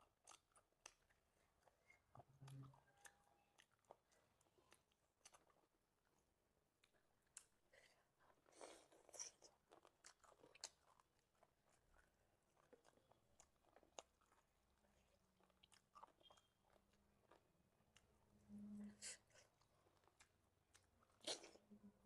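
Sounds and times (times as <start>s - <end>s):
close-up chewing and biting: 0.0s - 7.6s, 8.4s - 18.1s, 19.3s - 21.6s
crunchy chewing: 0.2s - 5.7s, 8.5s - 18.1s.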